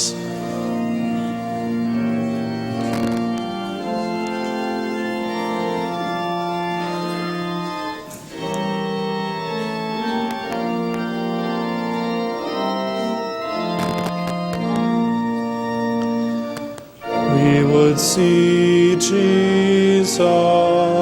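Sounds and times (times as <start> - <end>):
organ playing held chords: 0.0 - 21.0.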